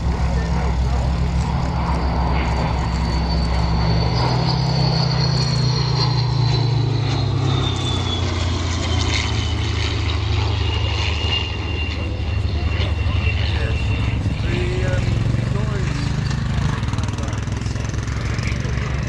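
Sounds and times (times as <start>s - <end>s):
aircraft engines droning: 0.0s - 19.0s.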